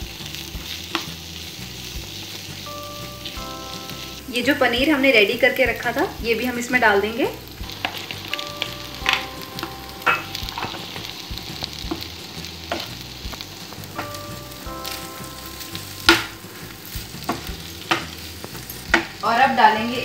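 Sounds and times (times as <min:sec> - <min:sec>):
soft sizzle: 0:00.0 - 0:20.0
spoon clicking and scraping pan: 0:07.7 - 0:11.1, 0:14.8 - 0:19.2.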